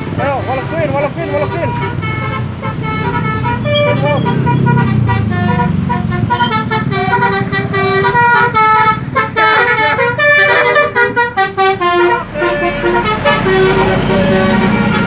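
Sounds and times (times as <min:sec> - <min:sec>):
bus engine rumble: 0:00.0 - 0:15.0
bus musical horn playing a tune: 0:00.0 - 0:15.0.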